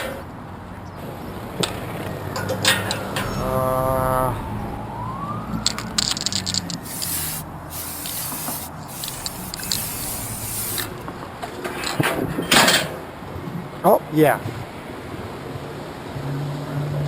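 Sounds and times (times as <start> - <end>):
spray paint can hissing: 6.2 - 11.2.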